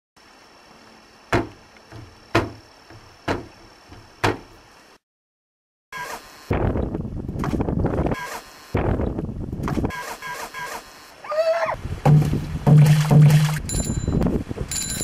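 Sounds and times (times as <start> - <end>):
sharp knocks: 1.3 - 4.5, 12.0 - 13.6.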